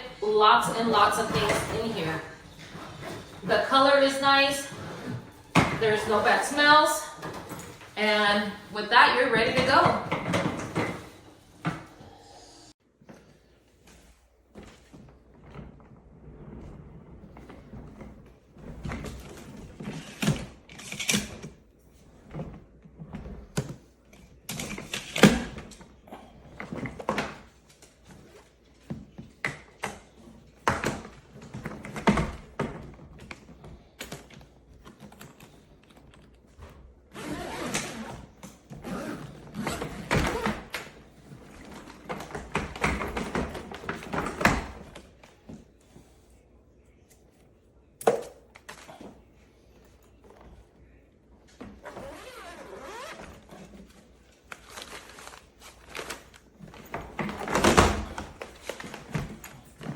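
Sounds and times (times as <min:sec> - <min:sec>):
rustling and scraping: 0:00.0 - 0:08.2.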